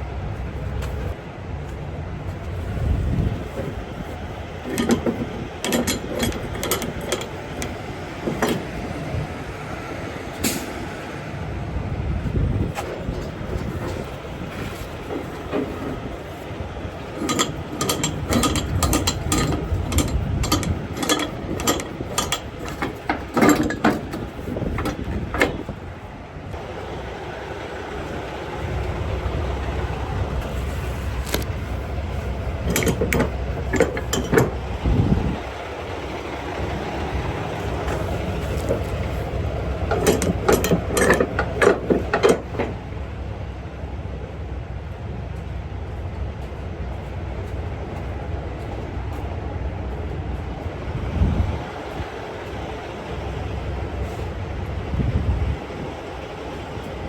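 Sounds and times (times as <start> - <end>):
low engine rumble: 0.0 - 57.0
metallic ratcheting clicks: 4.7 - 8.7, 17.2 - 24.2, 32.6 - 34.6, 39.9 - 42.7.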